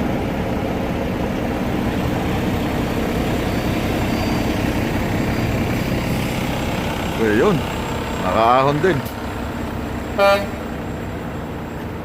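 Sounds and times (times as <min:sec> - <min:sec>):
diesel truck engine under load: 0:00.0 - 0:12.0.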